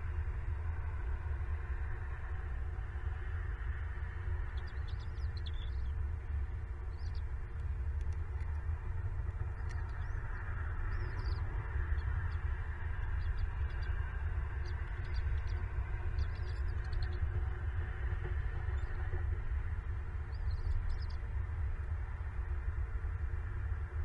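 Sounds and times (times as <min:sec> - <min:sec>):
steady low rumble: 0:00.0 - 0:24.0
high-pitched bird chirps: 0:14.6 - 0:17.2, 0:20.3 - 0:21.2.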